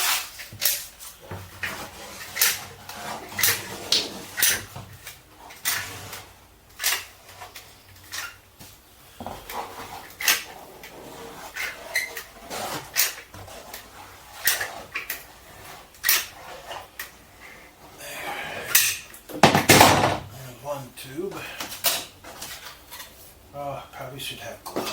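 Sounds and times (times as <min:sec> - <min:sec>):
handling noise: 0:18.7 - 0:20.5.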